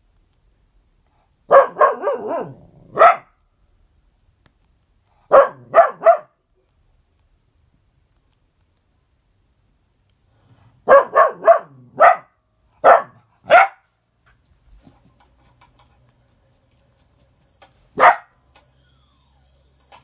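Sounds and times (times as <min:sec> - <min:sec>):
dog barking: 0:01.5 - 0:03.4, 0:05.3 - 0:06.4, 0:10.8 - 0:13.9, 0:18.0 - 0:18.3.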